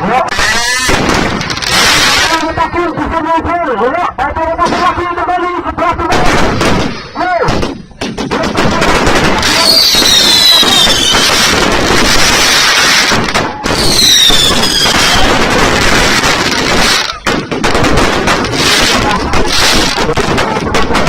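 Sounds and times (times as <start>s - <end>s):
fireworks crackling and banging: 0.0s - 21.0s
falling firework whistles: 9.6s - 15.3s.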